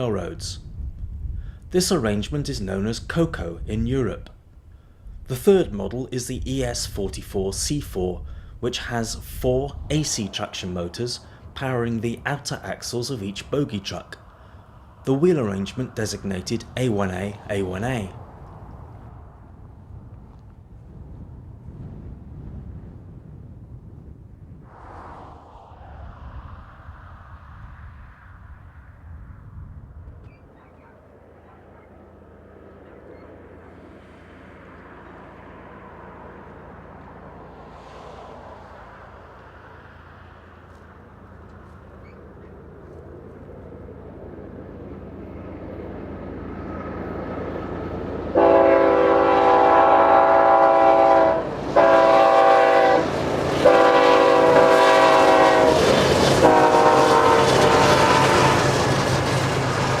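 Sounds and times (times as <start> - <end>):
diesel locomotive engine and rail noise: 0.0 - 24.0, 24.6 - 60.0
train air horn blasts: 48.3 - 58.8.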